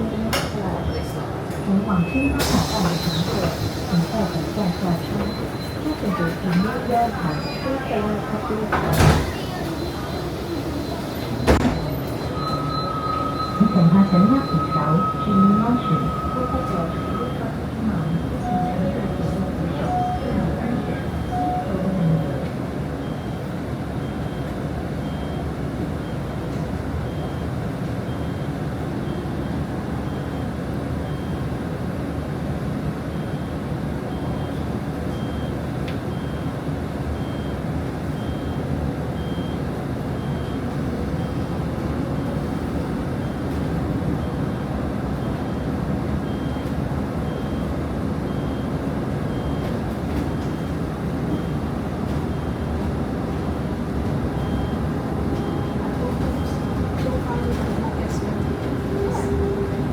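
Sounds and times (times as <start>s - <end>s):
bus engine and road noise: 0.0s - 14.6s, 16.2s - 59.9s
high electronic beep: 9.8s - 17.4s.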